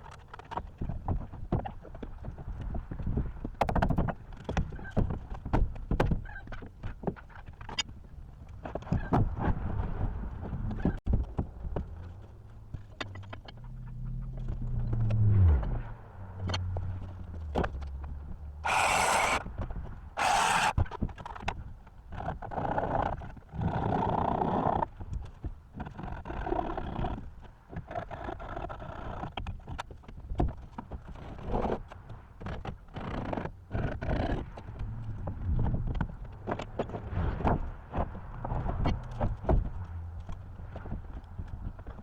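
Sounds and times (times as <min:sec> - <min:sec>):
short harsh bursts: 0:18.6 - 0:19.4, 0:20.2 - 0:20.8.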